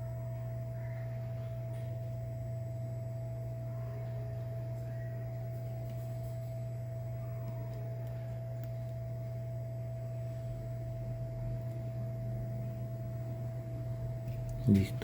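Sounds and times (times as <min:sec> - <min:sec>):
high-pitched whine: 0:00.0 - 0:07.8
low electrical hum: 0:00.0 - 0:15.0.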